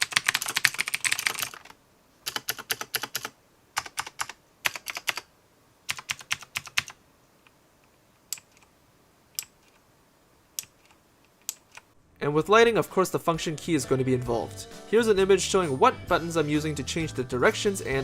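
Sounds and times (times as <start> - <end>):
mechanical keyboard typing: 0.0 - 5.3, 5.9 - 7.0.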